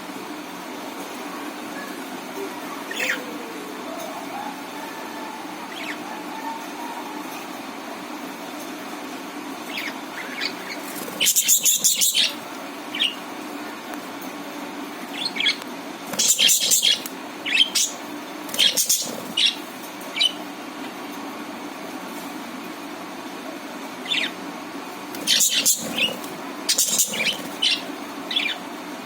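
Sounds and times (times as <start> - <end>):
budgerigars harsh chatter: 2.9 - 3.3, 9.7 - 13.2, 16.2 - 18.0, 18.6 - 19.6, 25.2 - 28.6
budgerigars chirping: 9.7 - 12.4, 16.2 - 18.0, 18.6 - 19.6, 25.2 - 28.6.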